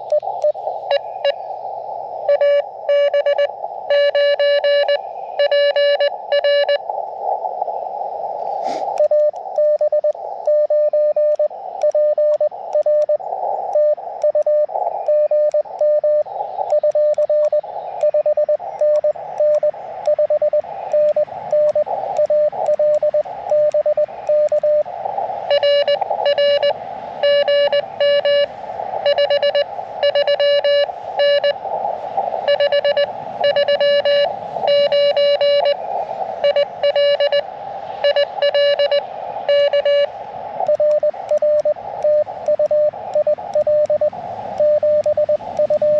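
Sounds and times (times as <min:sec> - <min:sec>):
receiver hiss: 0:00.0 - 0:45.9
morse code tone: 0:02.3 - 0:06.8, 0:09.0 - 0:13.2, 0:13.8 - 0:24.8, 0:25.5 - 0:31.6, 0:32.4 - 0:35.8, 0:36.4 - 0:45.9
click: 0:11.3 - 0:15.9, 0:16.7 - 0:18.2, 0:18.8 - 0:20.2, 0:20.9 - 0:24.7, 0:40.6 - 0:44.0.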